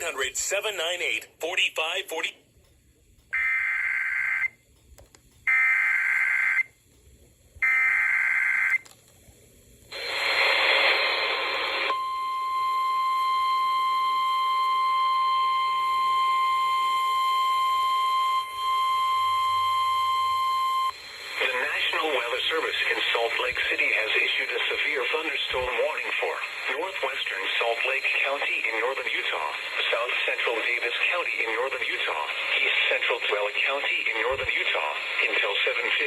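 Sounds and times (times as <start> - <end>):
radio hiss: 0.0 - 2.4, 7.2 - 11.9, 19.8 - 36.0
steady single-pitch attention tone: 12.0 - 21.1.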